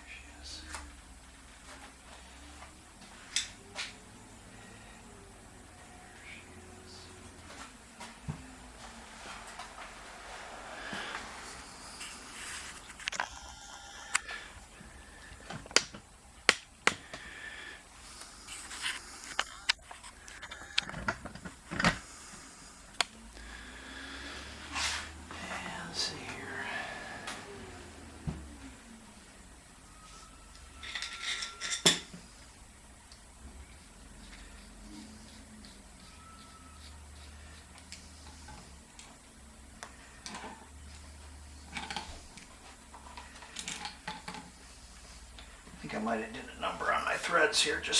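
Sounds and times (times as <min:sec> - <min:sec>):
low steady hum: 0:00.0 - 0:47.9.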